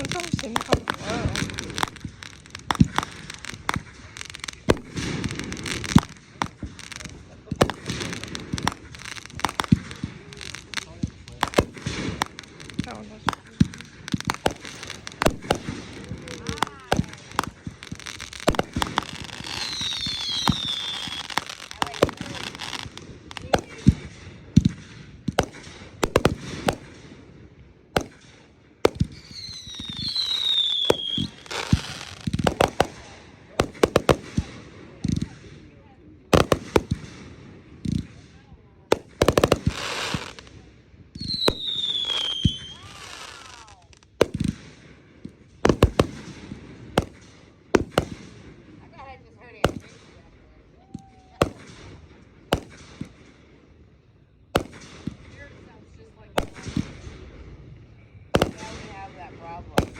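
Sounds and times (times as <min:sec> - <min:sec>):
fireworks bangs and cracks: 0:00.0 - 0:53.5, 0:54.5 - 0:57.5, 0:58.3 - 0:59.9
firework hiss and falling whistle: 0:19.0 - 0:21.6, 0:29.1 - 0:32.2, 0:41.2 - 0:43.8.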